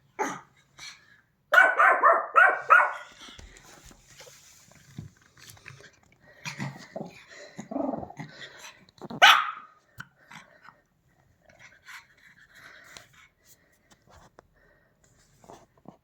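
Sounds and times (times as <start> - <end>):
sharp dog bark: 1.5 - 3.1, 9.2 - 9.7
dog growling low: 6.4 - 9.2.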